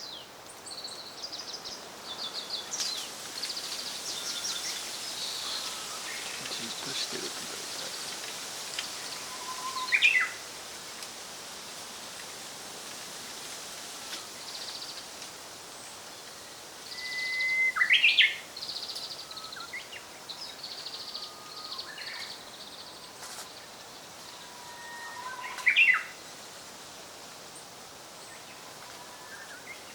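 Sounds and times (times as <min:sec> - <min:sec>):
steady hiss: 0:00.0 - 0:29.9
buzzy bird calls: 0:03.5 - 0:10.4
bird singing whistle and trill: 0:09.2 - 0:10.3, 0:16.9 - 0:18.4.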